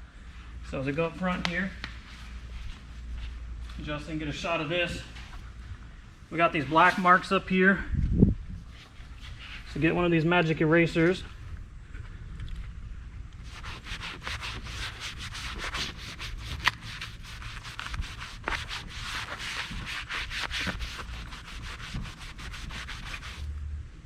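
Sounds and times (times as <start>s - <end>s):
sponge scrubbing a surface: 13.4s - 23.5s.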